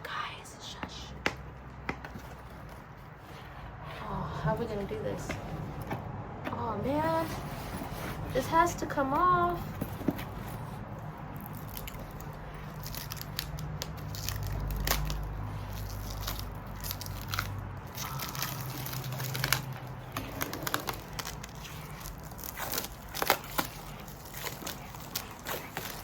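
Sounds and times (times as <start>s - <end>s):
packaging crinkling and tearing: 9.2s - 26.0s.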